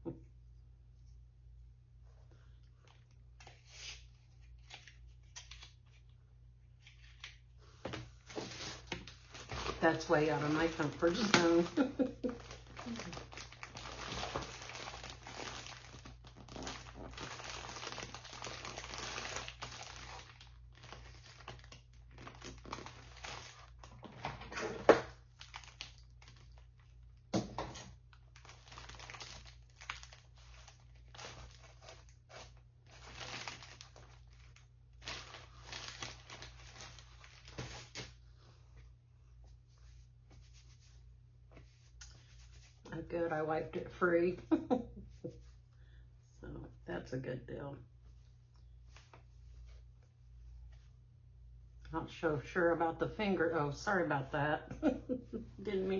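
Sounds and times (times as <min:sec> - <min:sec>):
wrapping crinkling and rustling: 0:02.1 - 0:38.2.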